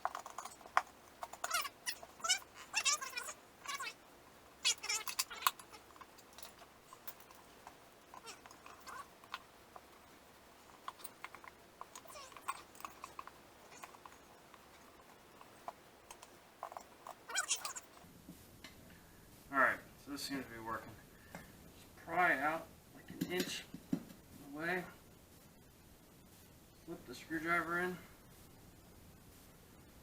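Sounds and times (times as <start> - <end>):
screwdrivers tapping on metal rim: 0.0 - 18.0
cat meowing: 1.4 - 4.0, 4.6 - 6.6, 8.2 - 9.1, 11.9 - 14.0, 17.3 - 17.9.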